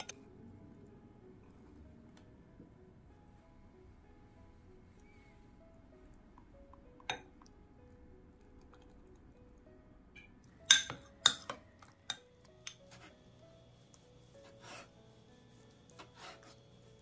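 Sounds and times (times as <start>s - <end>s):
soft background music: 0.0s - 17.0s
dishes and utensils clinking: 10.2s - 13.1s.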